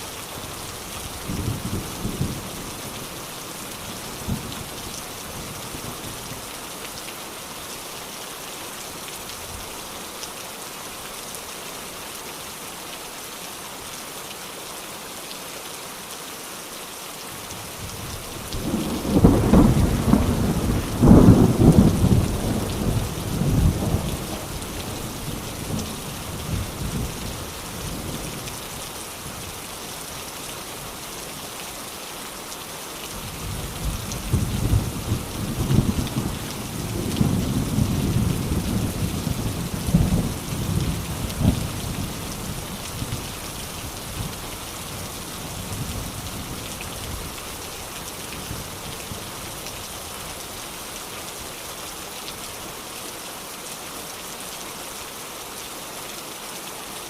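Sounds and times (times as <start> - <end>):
steady rain: 0.0 - 57.0
thunder rumbling: 18.5 - 25.9.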